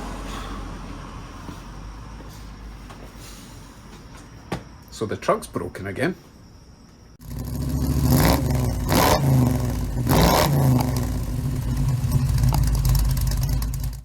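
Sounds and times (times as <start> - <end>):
engine revving: 7.2 - 14.0.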